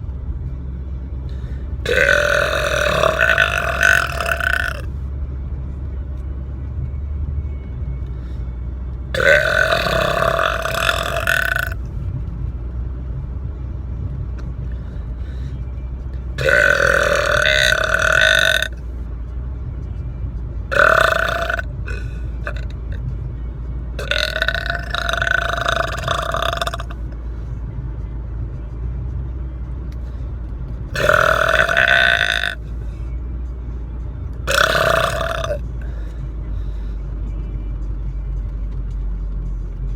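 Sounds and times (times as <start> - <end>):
car rumble: 0.0 - 39.9
person burping loudly: 1.8 - 4.9, 9.2 - 11.8, 16.4 - 18.8, 20.7 - 22.6, 24.0 - 27.0, 31.0 - 32.6, 34.4 - 35.6.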